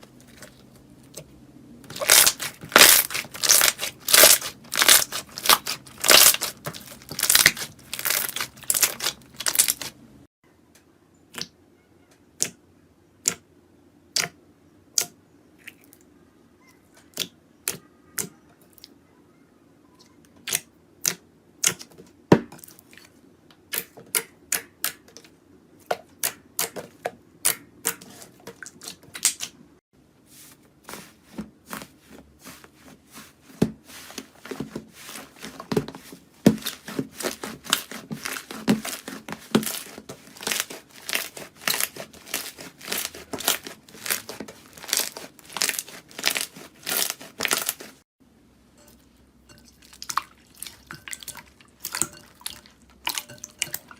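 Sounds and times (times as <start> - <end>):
slime crackling and popping: 1.9 - 10.0, 36.4 - 48.0.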